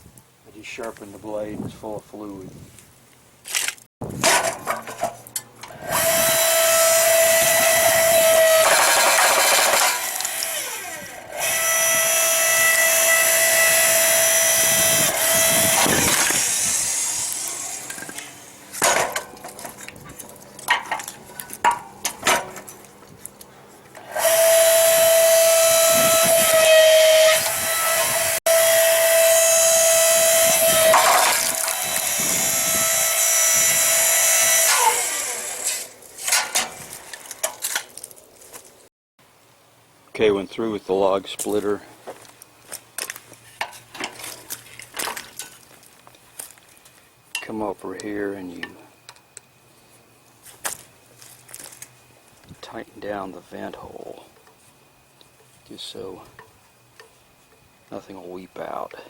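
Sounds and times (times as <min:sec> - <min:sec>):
log splitter motor whining: 0:04.7 - 0:22.7, 0:23.8 - 0:37.8.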